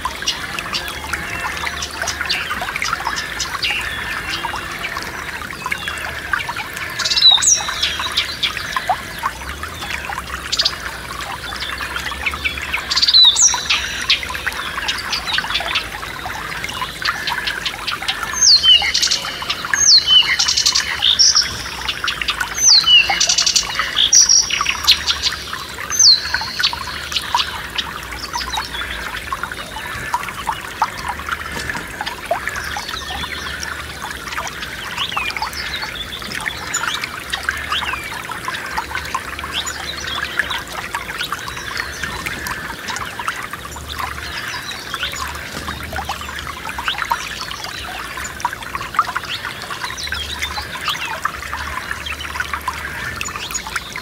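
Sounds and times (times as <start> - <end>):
songbirds singing: 0.0 - 54.0
stream trickling over stones: 0.0 - 54.0.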